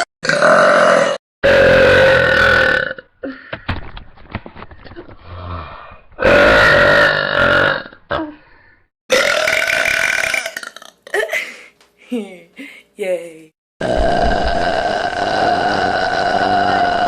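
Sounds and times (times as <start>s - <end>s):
woman burping loudly: 0.0s - 3.1s, 6.2s - 8.4s, 9.1s - 11.3s, 13.8s - 17.0s.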